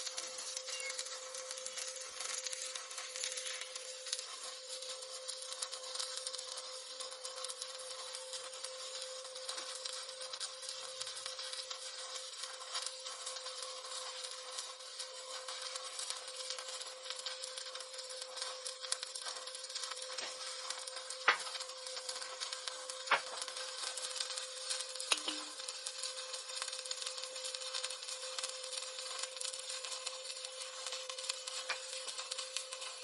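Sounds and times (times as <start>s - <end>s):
sharp welding pops: 0.0s - 33.0s
welding arc crackling: 0.0s - 33.0s
steady hum: 25.1s - 25.6s.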